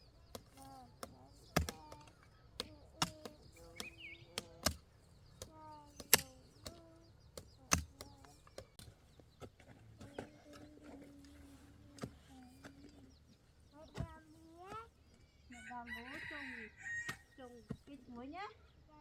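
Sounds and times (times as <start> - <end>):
soft animal or bird calls: 0.0 - 19.0
chopping strikes: 0.3 - 4.8, 5.4 - 6.8.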